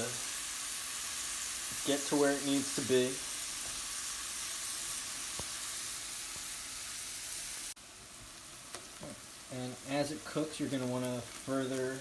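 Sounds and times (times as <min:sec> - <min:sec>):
meat sizzling in a frying pan: 0:00.0 - 0:12.0.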